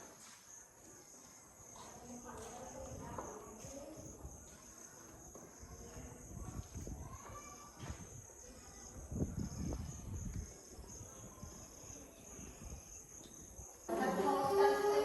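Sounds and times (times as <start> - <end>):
insects chirring: 0.4 - 15.0
people's voices: 0.7 - 15.0.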